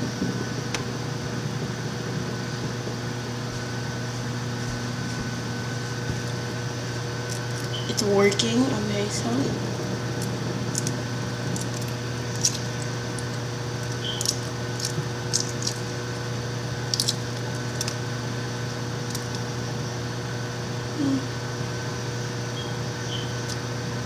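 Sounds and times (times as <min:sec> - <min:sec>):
microwave oven humming: 0:00.0 - 0:24.0
small crackles and ticks: 0:07.2 - 0:08.6, 0:10.2 - 0:16.0, 0:16.8 - 0:18.1, 0:19.0 - 0:19.6.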